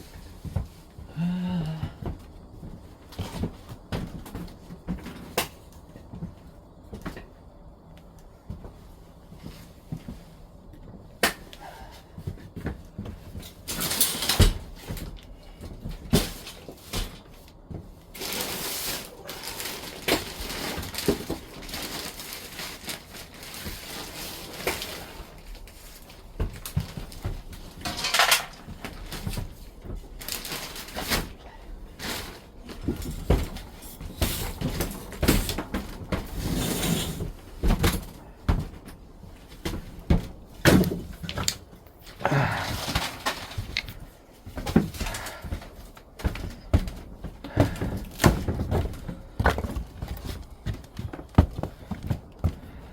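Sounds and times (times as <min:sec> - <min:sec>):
objects knocking and clattering: 0:26.4 - 0:31.3, 0:37.1 - 0:52.6.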